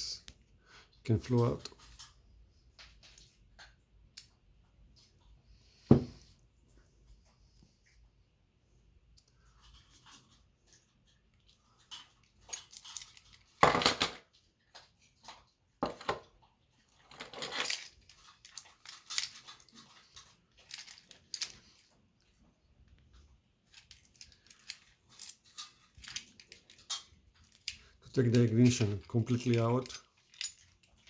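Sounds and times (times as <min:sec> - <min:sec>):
metal parts clicking and clinking: 0:09.2 - 0:22.4, 0:23.1 - 0:31.0
metal parts clattering: 0:11.8 - 0:14.2, 0:16.9 - 0:21.9, 0:23.7 - 0:31.0.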